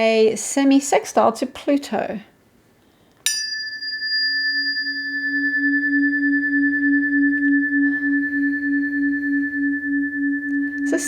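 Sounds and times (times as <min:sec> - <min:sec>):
singing bowl ringing: 0:03.3 - 0:11.0
low wavering hum: 0:03.4 - 0:11.0.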